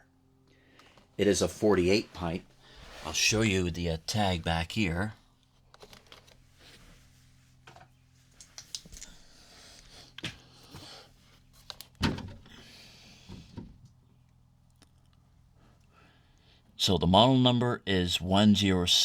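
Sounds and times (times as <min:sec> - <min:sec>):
faint low hum: 0:00.0 - 0:19.0.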